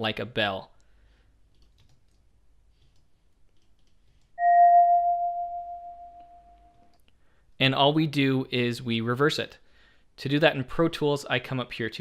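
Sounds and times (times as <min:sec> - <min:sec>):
glass bowl ringing: 0:04.4 - 0:06.2.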